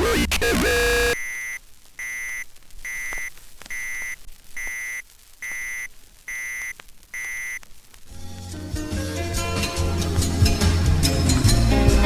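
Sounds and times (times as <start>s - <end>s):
high electronic beeps: 0.0s - 7.6s.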